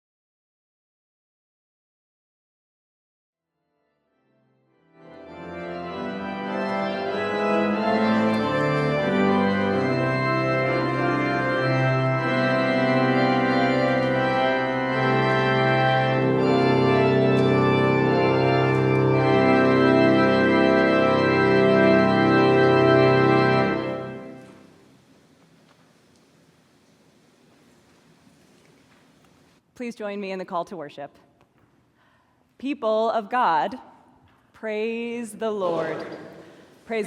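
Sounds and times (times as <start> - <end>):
organ playing sustained chords: 4.5 - 24.9.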